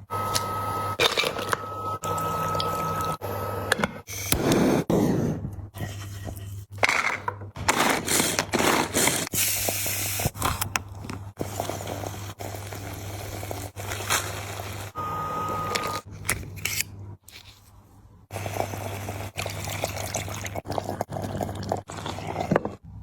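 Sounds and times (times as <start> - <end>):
brief steady tone: 0.0 - 3.7, 15.0 - 16.0.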